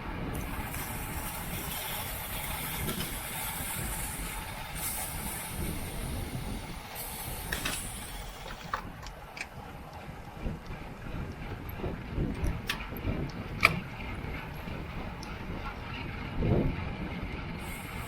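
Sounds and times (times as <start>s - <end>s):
bicycle tyre noise: 0.0s - 18.0s
wind rushing over microphone: 0.0s - 18.0s
hiss: 0.3s - 8.8s, 17.6s - 18.0s.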